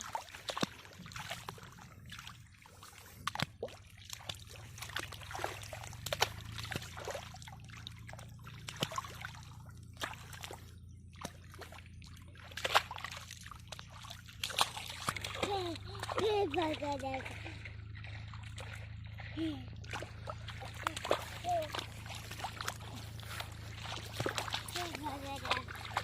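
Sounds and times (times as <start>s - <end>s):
hands splashing in water: 0.0s - 11.8s, 12.4s - 18.8s, 19.8s - 26.0s
pond water sloshing and dripping: 0.0s - 26.0s.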